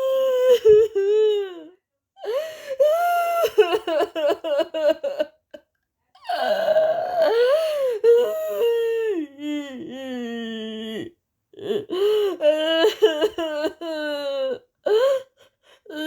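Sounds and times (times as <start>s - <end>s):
woman crying: 0.0s - 5.6s, 6.3s - 15.3s.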